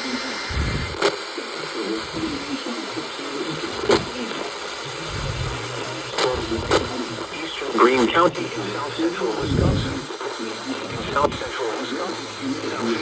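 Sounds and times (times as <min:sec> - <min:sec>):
radio crackle: 0:00.0 - 0:13.0
radio hiss: 0:00.0 - 0:13.0.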